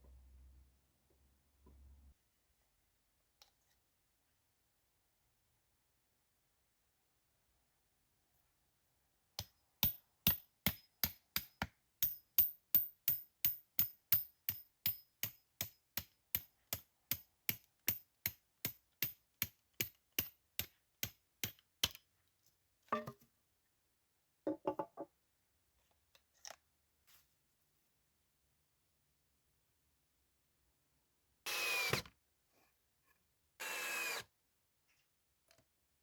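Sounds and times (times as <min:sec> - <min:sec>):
tool hammering: 0:09.4 - 0:22.0.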